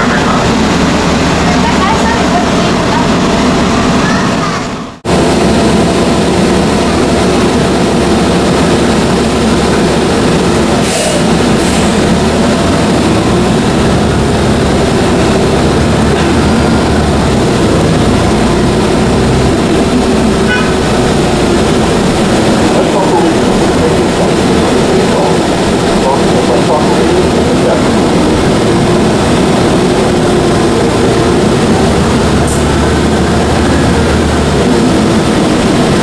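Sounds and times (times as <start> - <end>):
subway train rumbling: 0.0 - 36.0.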